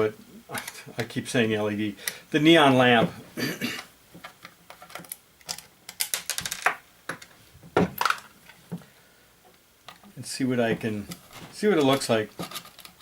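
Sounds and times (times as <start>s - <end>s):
small metal parts clicking: 4.7s - 6.7s, 11.9s - 13.0s.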